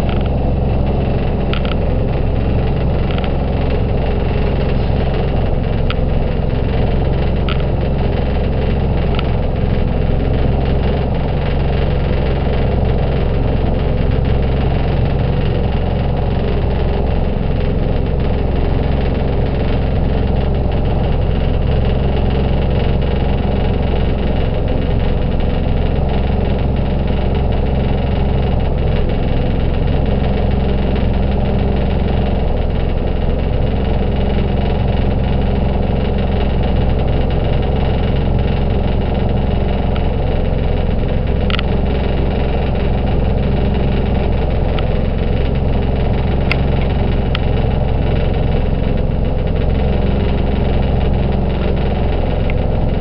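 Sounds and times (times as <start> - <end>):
boat engine droning: 0.0 - 53.0.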